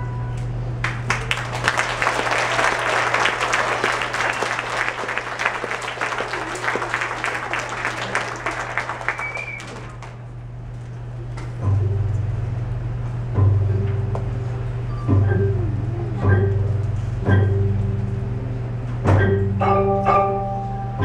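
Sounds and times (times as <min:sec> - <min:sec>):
low electrical hum: 0:00.0 - 0:21.0
audience applauding: 0:00.8 - 0:10.4.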